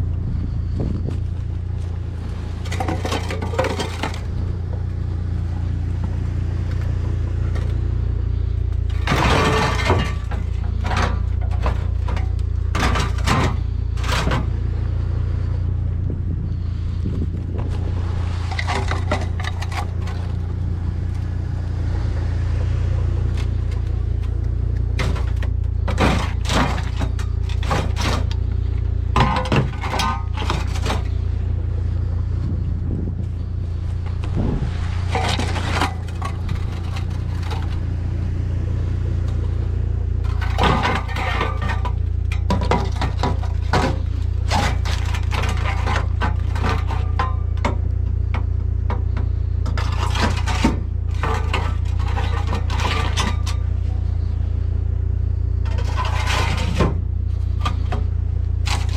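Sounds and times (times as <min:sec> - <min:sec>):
low engine hum: 0:00.0 - 0:58.9
scrap metal clanking: 0:00.4 - 0:15.8, 0:16.5 - 0:54.8, 0:55.4 - 0:58.9.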